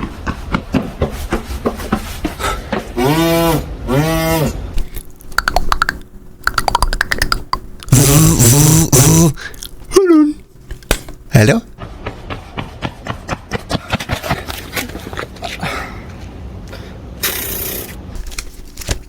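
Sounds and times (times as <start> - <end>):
beatboxer mouth clicks: 4.8 - 9.8
loud buzzy tone: 7.8 - 9.4.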